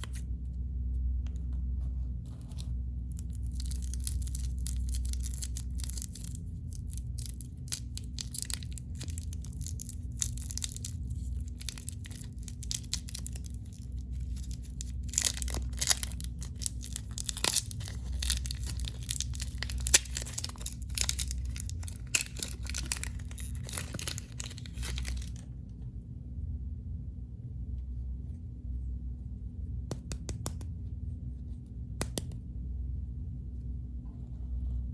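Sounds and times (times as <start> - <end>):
candy wrappers crinkling: 0.0 - 0.2, 2.4 - 25.4.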